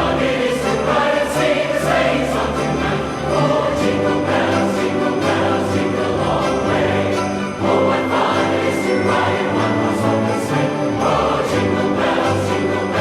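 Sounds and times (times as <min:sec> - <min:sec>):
choir singing over chords: 0:00.0 - 0:13.0
jingle bells shaking: 0:02.6 - 0:13.0.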